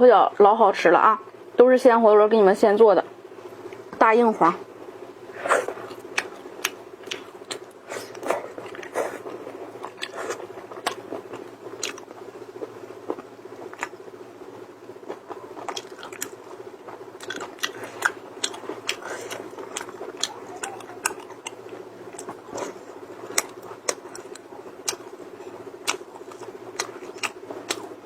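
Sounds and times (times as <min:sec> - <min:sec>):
steady low hum: 0:00.0 - 0:28.0
shell cracking while chewing: 0:05.8 - 0:12.2, 0:15.1 - 0:28.0.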